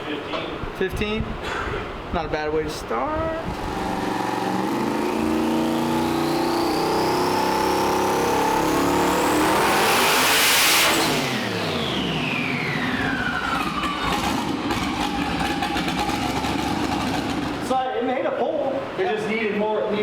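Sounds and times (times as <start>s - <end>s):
high turbo whine: 3.4s - 17.7s
engine revving at full throttle: 3.5s - 17.6s.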